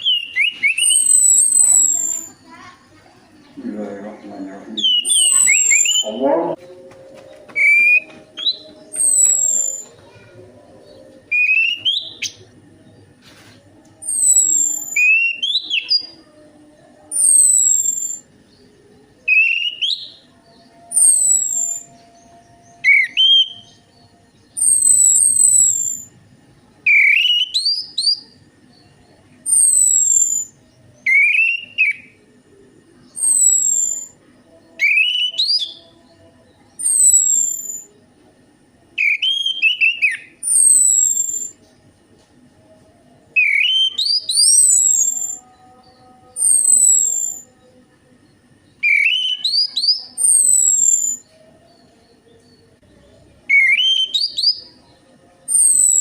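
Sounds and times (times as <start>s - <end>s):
thrush song whistled phrases: 4.8s - 6.2s, 48.8s - 51.2s, 53.5s - 54.6s.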